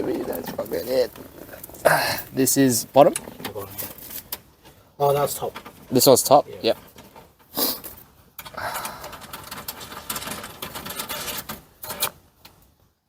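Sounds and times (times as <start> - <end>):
metal parts clicking and rattling: 5.0 - 12.2.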